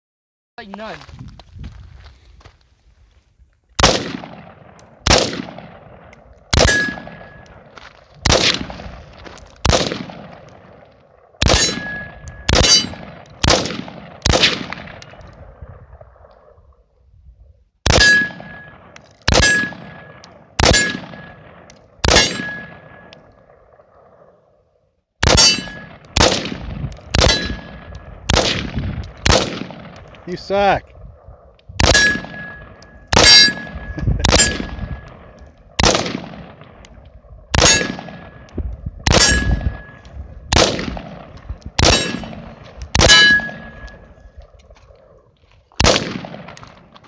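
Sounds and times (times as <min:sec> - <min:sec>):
rifle shots: 0:03.8 - 0:16.5, 0:17.8 - 0:24.3, 0:25.2 - 0:30.8, 0:31.8 - 0:44.2, 0:45.8 - 0:47.0
metallic ringing of steel target: 0:06.6 - 0:07.6, 0:11.5 - 0:13.4, 0:17.9 - 0:21.5, 0:22.1 - 0:23.2, 0:25.3 - 0:26.0, 0:27.0 - 0:28.0, 0:31.8 - 0:35.3, 0:37.6 - 0:38.5, 0:39.1 - 0:40.1, 0:41.8 - 0:44.0.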